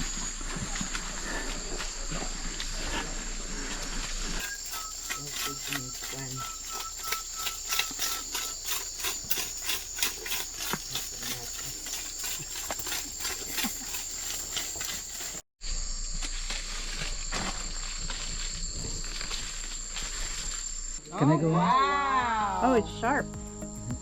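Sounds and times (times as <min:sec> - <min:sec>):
high insect drone: 0:00.0 - 0:24.0
insects chirping: 0:00.0 - 0:24.0.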